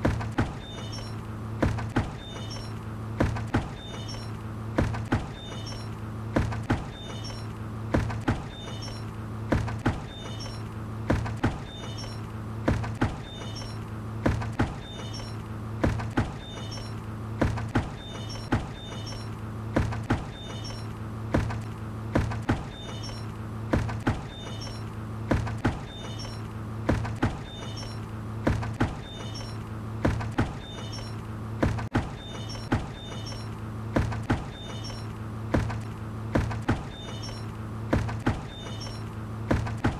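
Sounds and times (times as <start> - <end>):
steady low hum: 0.0 - 39.9
short creak: 0.6 - 1.2, 2.2 - 2.8, 3.4 - 4.4, 5.3 - 6.0, 6.6 - 7.5, 8.5 - 9.1, 9.7 - 10.7, 11.6 - 15.4, 16.0 - 17.0, 17.9 - 19.4, 20.0 - 20.9, 22.4 - 23.3, 23.9 - 24.9, 25.8 - 28.1, 29.0 - 29.6, 30.2 - 31.2, 32.2 - 35.1, 36.5 - 37.5, 38.1 - 39.1.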